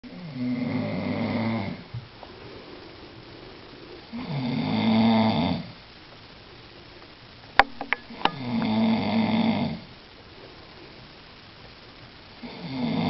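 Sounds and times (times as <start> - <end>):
man snoring: 0.1 - 1.8, 4.1 - 5.7, 12.4 - 13.0
sharp clicks: 7.6 - 8.7.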